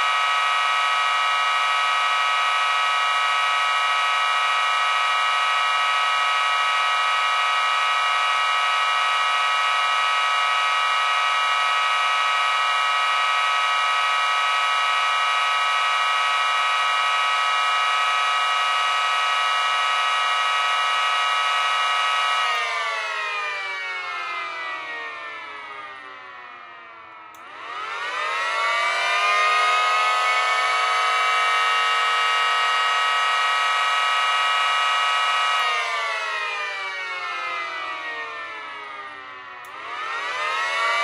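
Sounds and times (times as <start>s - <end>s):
sirens wailing high tones: 27.4s - 41.0s.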